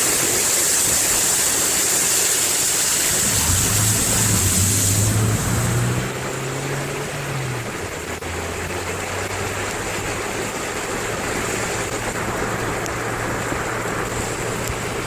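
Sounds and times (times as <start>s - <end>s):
floodwater rushing: 0.0s - 15.0s.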